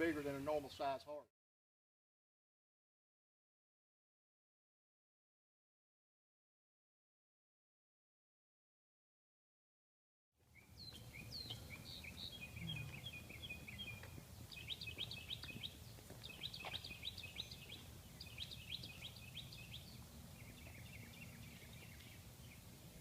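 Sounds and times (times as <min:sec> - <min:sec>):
small birds chirping: 0:10.4 - 0:23.0.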